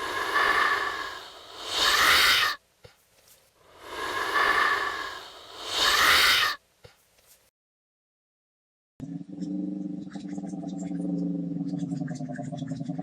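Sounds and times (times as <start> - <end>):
distorted wheezing monster hiss: 0.0 - 2.6, 3.6 - 6.6.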